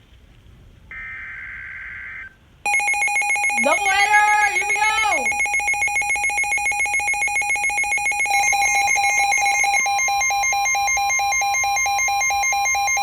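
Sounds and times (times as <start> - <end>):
fast pulsing electronic alarm: 2.7 - 13.0
steady warning alarm tone: 2.7 - 13.0.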